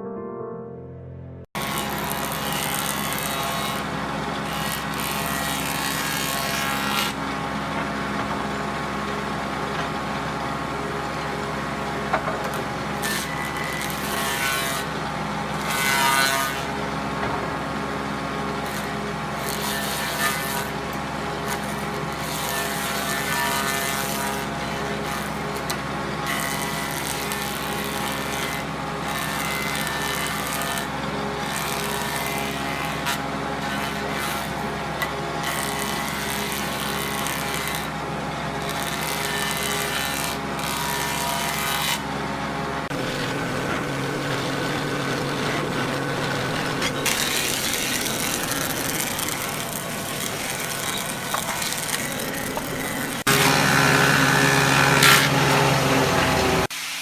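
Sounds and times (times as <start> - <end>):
power tool cutting wood: 1.6 - 57.0.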